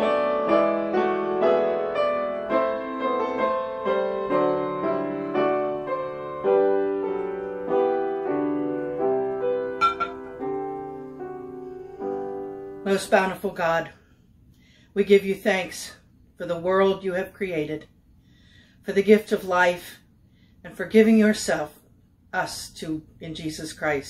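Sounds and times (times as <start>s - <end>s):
slow piano melody: 0.0s - 13.0s.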